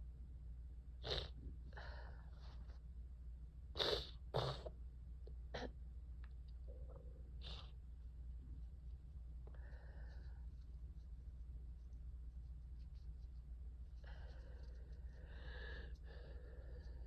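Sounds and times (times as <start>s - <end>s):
breathy sounds: 14.0s - 17.0s.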